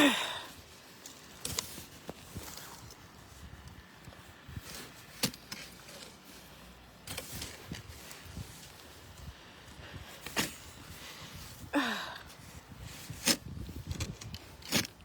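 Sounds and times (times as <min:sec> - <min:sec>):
snow shovel scraping: 0:04.6 - 0:09.0.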